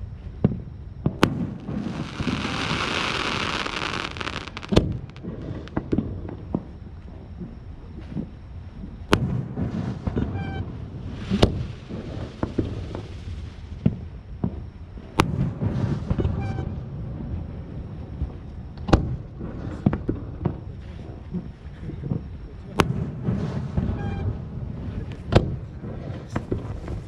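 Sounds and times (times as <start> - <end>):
firework bangs: 1.0 - 6.7, 9.1 - 17.5, 22.7 - 27.0
firework crackles and pops: 1.0 - 6.7, 9.1 - 16.8, 22.7 - 27.0
firework hiss: 1.2 - 5.9, 11.0 - 13.8.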